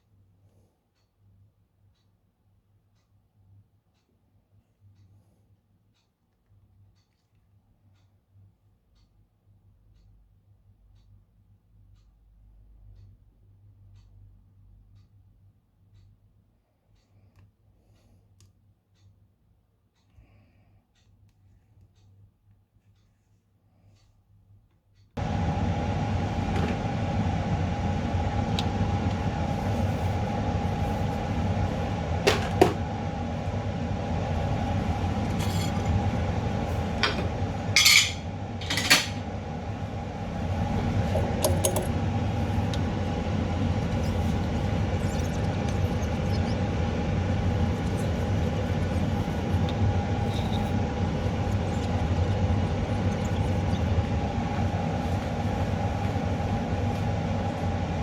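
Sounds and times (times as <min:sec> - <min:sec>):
machine humming: 0:25.2 - 0:58.0.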